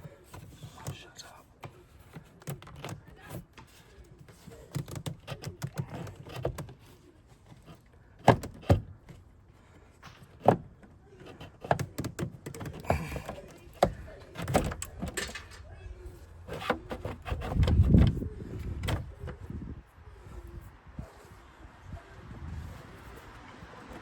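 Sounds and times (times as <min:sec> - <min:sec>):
plastic airbox knocking: 0:10.3 - 0:15.4.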